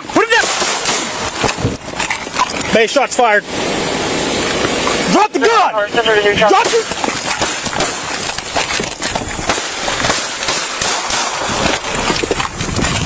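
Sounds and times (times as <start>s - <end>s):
microphone rubbing and knocking: 6.9s - 10.5s, 11.4s - 13.0s.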